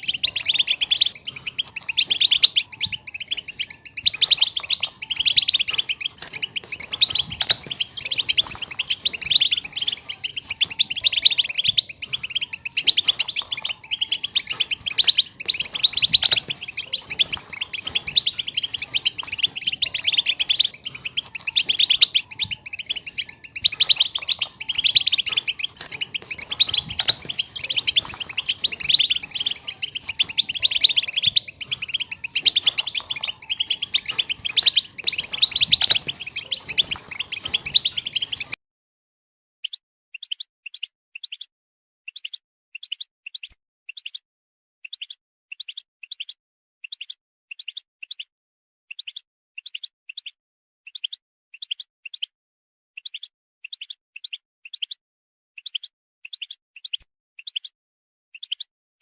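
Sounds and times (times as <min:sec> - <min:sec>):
finch chirping and twittering: 0:00.0 - 0:38.6, 0:39.6 - 0:41.5, 0:42.1 - 0:44.2, 0:44.8 - 0:48.3, 0:48.9 - 0:52.3, 0:53.0 - 0:55.0, 0:55.6 - 0:57.8, 0:58.4 - 0:58.7.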